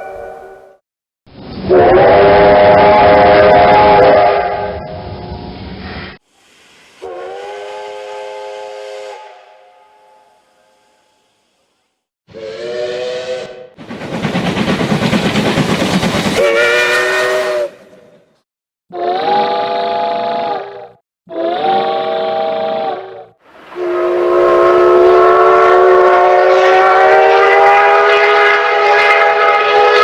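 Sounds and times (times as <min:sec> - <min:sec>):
steam locomotive whistle: 0:00.0 - 0:00.8, 0:01.6 - 0:05.5, 0:07.0 - 0:11.4, 0:12.3 - 0:13.8, 0:16.2 - 0:18.2, 0:18.9 - 0:30.0
steam hissing: 0:05.8 - 0:09.4, 0:12.4 - 0:17.8.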